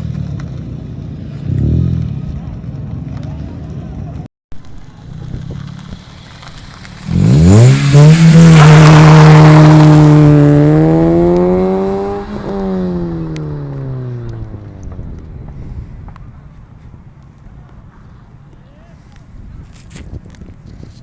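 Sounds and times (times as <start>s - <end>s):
engine and road noise: 0.0s - 21.0s
car exhaust accelerating hard: 4.6s - 16.7s.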